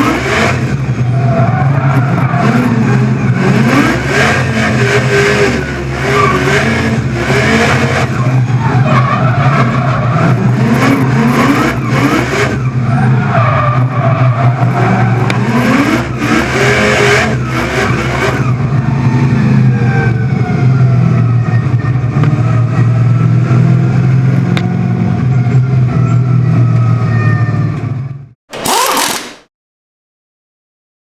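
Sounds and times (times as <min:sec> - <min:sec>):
car engine revving hard: 0:00.0 - 0:08.3, 0:28.5 - 0:29.4
tyres squealing and skidding: 0:01.0 - 0:03.1, 0:08.1 - 0:10.4, 0:12.6 - 0:15.3, 0:28.5 - 0:29.4
supercharger whine: 0:28.5 - 0:29.4.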